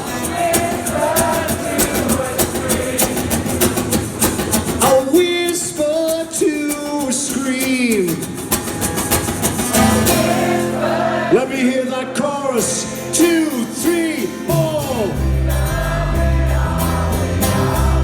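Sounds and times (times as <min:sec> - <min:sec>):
live rock band playing: 0:08.4 - 0:10.9
person singing: 0:09.7 - 0:18.0.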